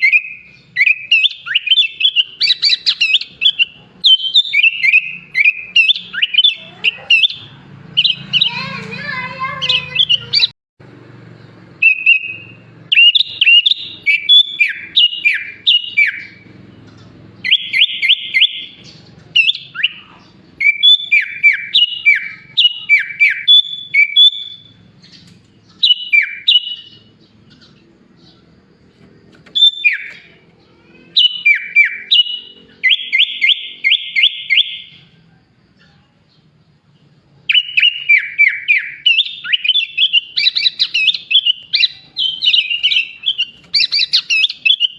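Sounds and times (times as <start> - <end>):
bulbul singing whistled phrases: 0.0 - 10.6, 11.5 - 44.9.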